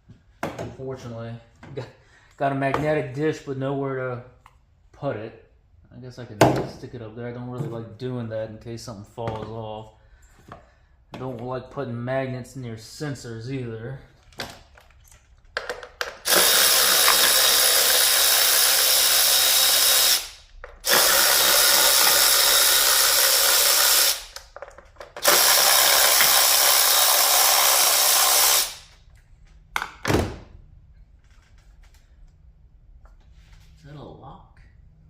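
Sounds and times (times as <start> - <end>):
cordless power tool running: 16.3 - 24.4, 25.2 - 28.8.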